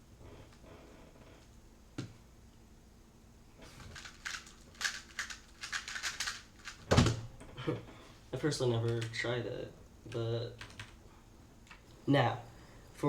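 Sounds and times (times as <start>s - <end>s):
puzzle cube clatter: 3.7s - 6.9s
plastic puzzle cube clicking: 4.0s - 6.8s.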